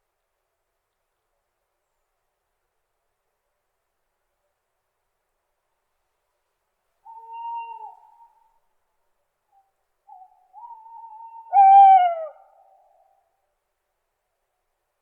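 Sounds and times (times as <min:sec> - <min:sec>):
owl hooting: 0:07.1 - 0:08.4, 0:10.1 - 0:13.1.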